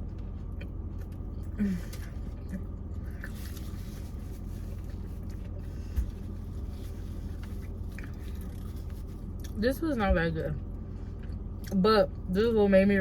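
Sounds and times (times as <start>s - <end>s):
low hum inside car: 0.0s - 13.0s
chewing and mouth clicks: 0.1s - 3.7s.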